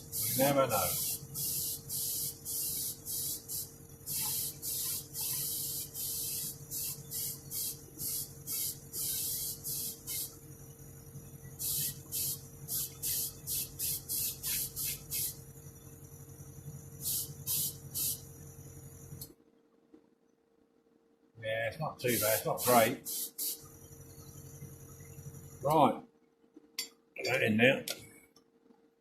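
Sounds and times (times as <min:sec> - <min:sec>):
spray gun hissing: 0:00.0 - 0:10.4, 0:11.6 - 0:15.4, 0:17.0 - 0:18.2, 0:22.1 - 0:23.7
air compressor humming: 0:00.0 - 0:19.3, 0:22.0 - 0:25.9.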